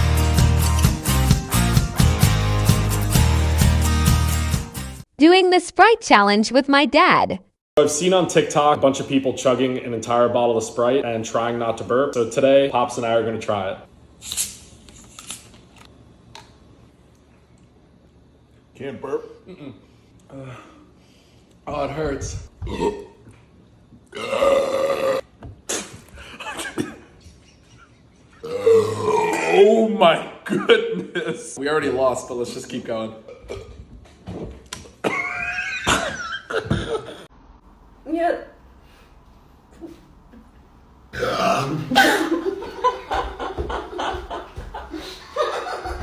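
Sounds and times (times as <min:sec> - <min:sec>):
loud drawn-out burp: 0:22.6 - 0:23.2, 0:24.1 - 0:25.3, 0:28.4 - 0:29.8, 0:41.1 - 0:42.0.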